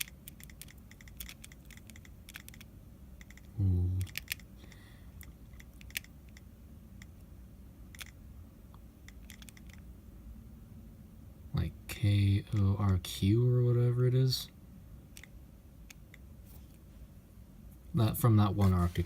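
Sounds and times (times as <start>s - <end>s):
touchscreen keyboard clicks: 0.0s - 4.4s, 5.2s - 7.1s, 7.9s - 8.2s, 9.1s - 9.8s.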